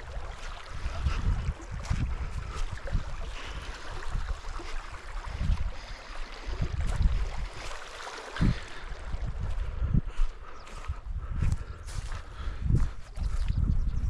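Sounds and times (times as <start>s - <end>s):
small stream rushing: 0.0s - 9.6s
wind buffeting microphone: 0.0s - 14.0s.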